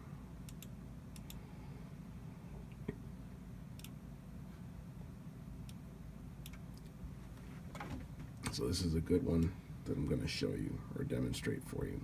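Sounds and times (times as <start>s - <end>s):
low room hum: 0.0s - 12.0s
faint clicks of controller: 0.4s - 1.4s, 3.8s - 4.0s.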